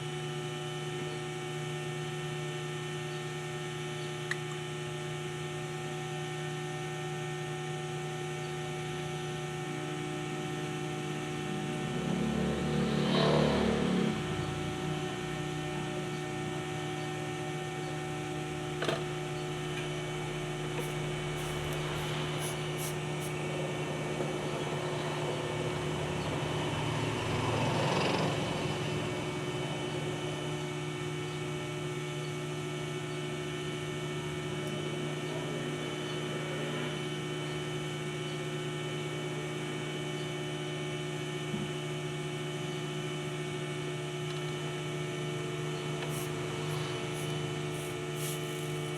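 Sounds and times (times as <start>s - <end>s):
steady electrical hum: 0.0s - 48.9s
rustling noise: 46.1s - 48.9s.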